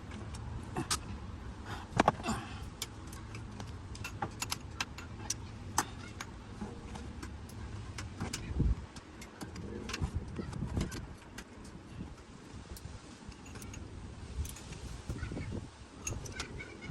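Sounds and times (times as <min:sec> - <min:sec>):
tools clicking and clinking: 0:02.6 - 0:08.5, 0:12.7 - 0:15.2, 0:16.0 - 0:16.6.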